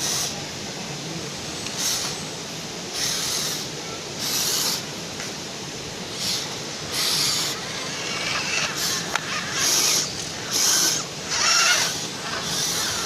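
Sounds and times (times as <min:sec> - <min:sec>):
wheels spinning: 0:06.0 - 0:13.0
electric motor whining: 0:06.2 - 0:13.0.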